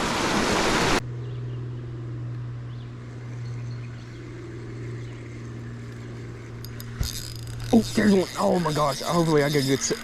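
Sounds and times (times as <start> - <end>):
creek water rushing: 0.0 - 1.0
low whir: 0.0 - 10.0.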